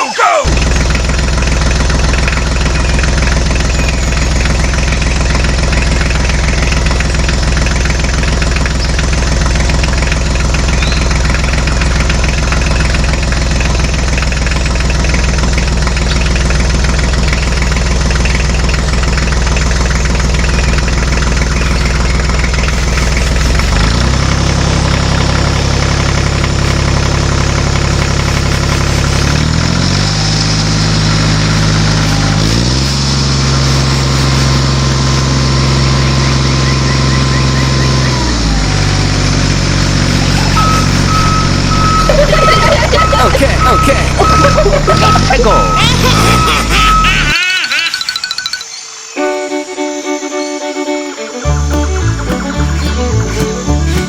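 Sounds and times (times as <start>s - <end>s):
tractor engine running: 0.0s - 49.1s, 50.9s - 54.0s.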